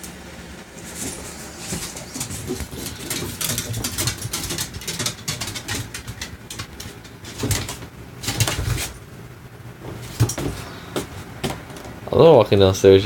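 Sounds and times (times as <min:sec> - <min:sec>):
dog snuffling and grunting: 0:00.8 - 0:07.7.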